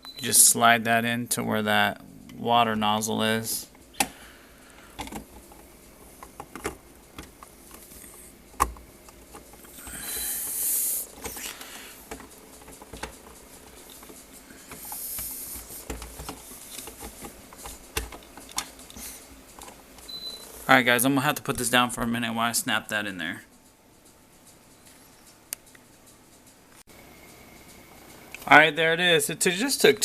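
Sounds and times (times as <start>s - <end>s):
hissy plastic rubbing: 2.5s - 20.8s
hard plastic clicking and tapping: 4.9s - 7.9s, 8.5s - 10.3s, 12.0s - 19.8s.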